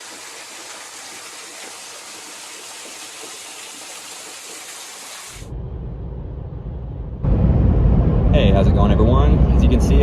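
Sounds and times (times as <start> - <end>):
car road noise rumble: 5.5 - 10.0.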